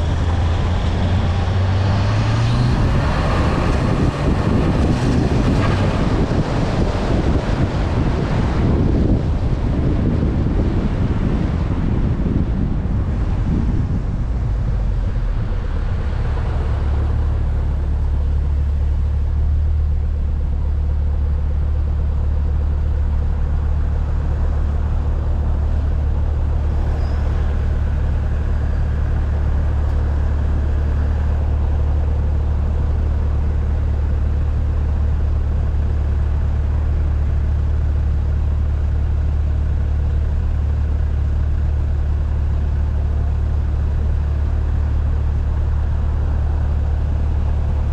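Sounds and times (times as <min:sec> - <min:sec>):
car driving low drone: 0:00.0 - 0:47.9.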